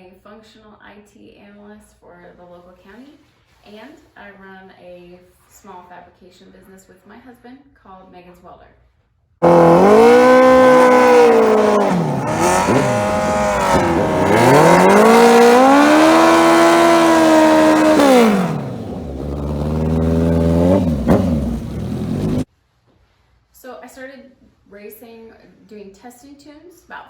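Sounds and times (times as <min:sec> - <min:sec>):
motorcycle engine revving: 0:09.4 - 0:22.5.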